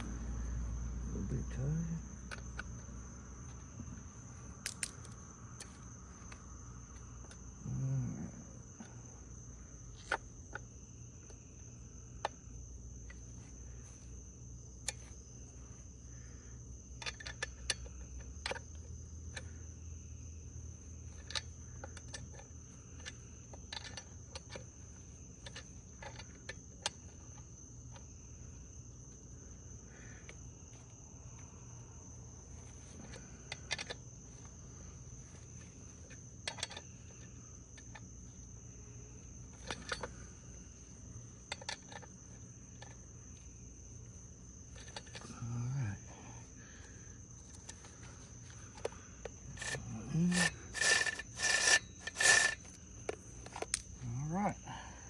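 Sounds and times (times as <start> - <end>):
high insect trill: 0.0 - 55.0
tools clicking and knocking: 4.6 - 5.8, 33.1 - 34.0, 36.1 - 37.2, 39.5 - 40.2, 41.5 - 42.1, 44.8 - 45.3, 47.4 - 53.9.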